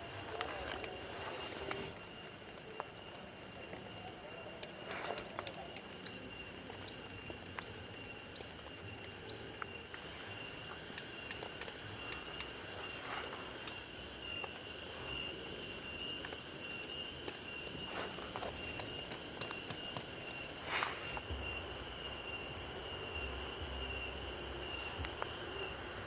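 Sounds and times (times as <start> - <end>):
high-pitched insect chirring: 0.2 - 26.0
sharp ticks: 9.0 - 12.8.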